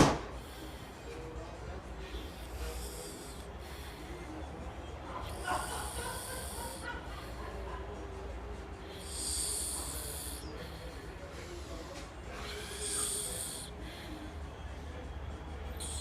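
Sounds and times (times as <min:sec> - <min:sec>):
reptile snoring hiss: 0:02.1 - 0:04.0, 0:05.2 - 0:07.4, 0:08.8 - 0:10.9, 0:12.4 - 0:14.1, 0:15.8 - 0:16.0.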